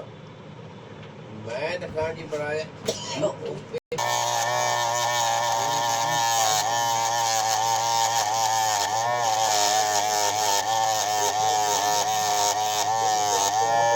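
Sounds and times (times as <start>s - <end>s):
small electric motor buzzing: 4.0s - 13.9s.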